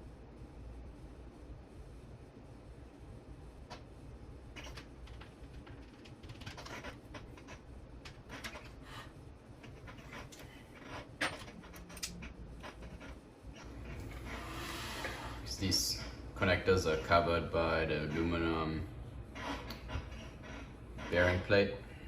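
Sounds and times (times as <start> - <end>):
low steady hum: 0.0 - 22.0
small clicks and rustles of parts: 4.6 - 14.2.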